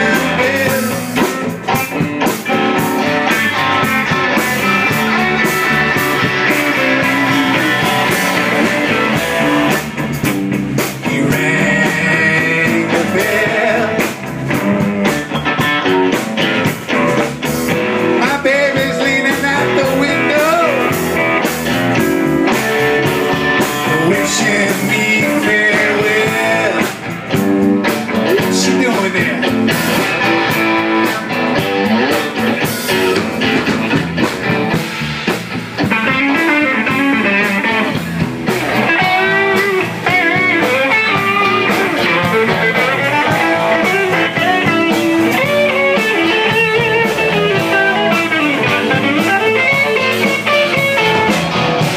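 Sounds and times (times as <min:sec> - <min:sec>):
blues band playing: 0:00.0 - 0:51.9
guitar bending notes: 0:00.0 - 0:51.9.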